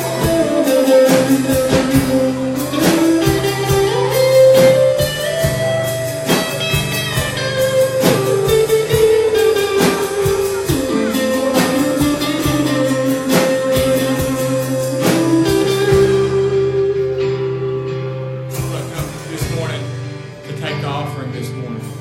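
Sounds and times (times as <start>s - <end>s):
live band music with guitar: 0.0s - 22.0s.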